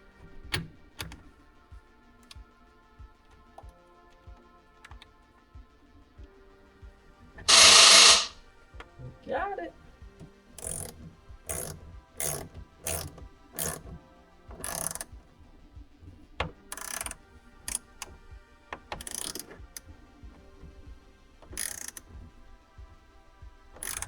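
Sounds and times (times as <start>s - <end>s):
ratchet wrench clicking: 7.5s - 8.4s, 19.1s - 19.4s, 21.6s - 22.0s.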